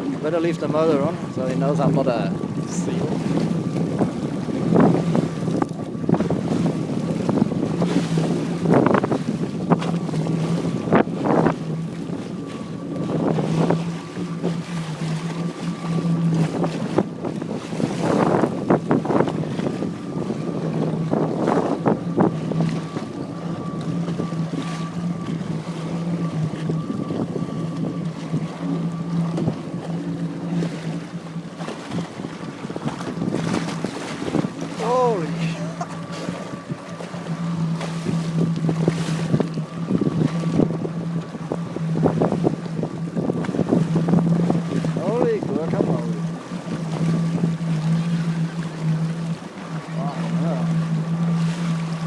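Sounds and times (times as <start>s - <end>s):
jet ski engine idling: 0.0s - 52.0s
wind buffeting microphone: 0.0s - 52.0s
water splashing: 17.7s - 52.0s
jetski engine idling: 34.4s - 52.0s.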